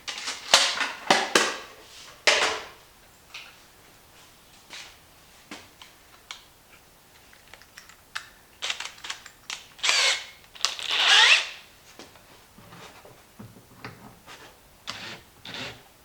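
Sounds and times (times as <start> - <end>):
drill whining: 9.8 - 11.6, 14.9 - 15.8.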